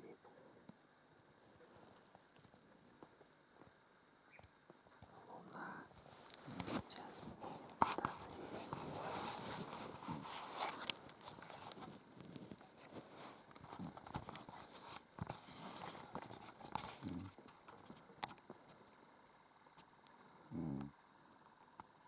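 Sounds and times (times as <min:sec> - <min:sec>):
man snoring: 0:20.5 - 0:20.9.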